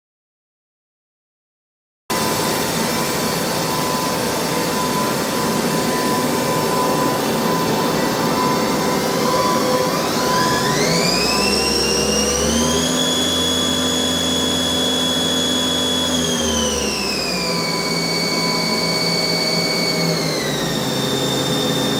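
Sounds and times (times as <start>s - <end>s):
lathe machine hum: 2.1s - 21.9s
spindle rising whine: 2.1s - 21.9s.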